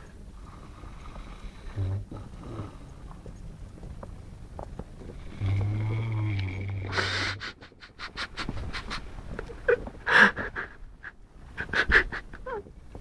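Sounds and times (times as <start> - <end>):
dog snoring: 0.5 - 2.8.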